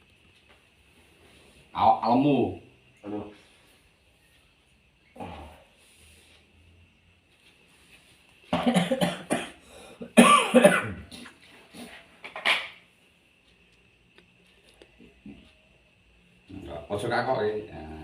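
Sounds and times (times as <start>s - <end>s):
person coughing: 8.5s - 11.3s.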